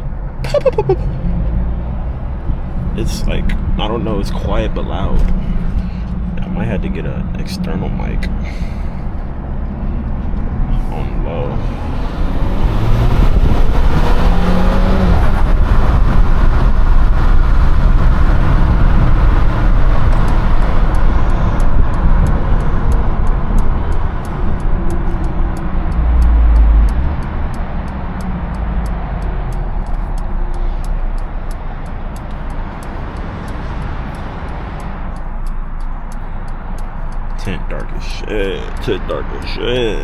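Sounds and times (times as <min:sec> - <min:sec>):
regular high ticking: 0:00.0 - 0:01.0, 0:02.4 - 0:40.0
car engine accelerating hard: 0:00.0 - 0:40.0
rushing wind noise: 0:11.6 - 0:35.7.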